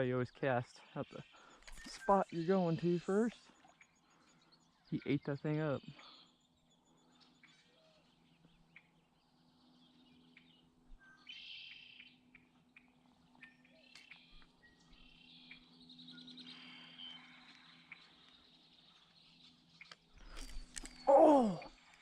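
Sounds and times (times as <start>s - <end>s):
bird chirps and trills: 0.5s - 22.0s.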